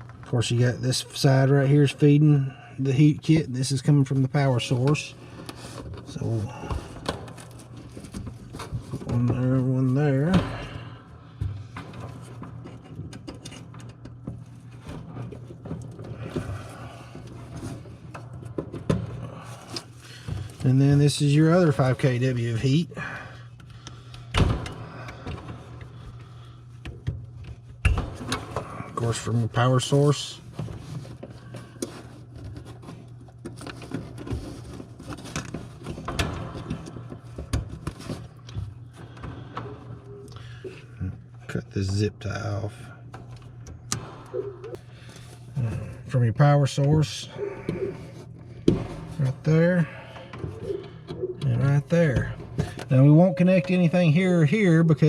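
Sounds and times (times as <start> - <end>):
steady low hum: 0.0 - 55.0
wire terminals clicking and scraping: 11.8 - 22.8, 29.0 - 55.0.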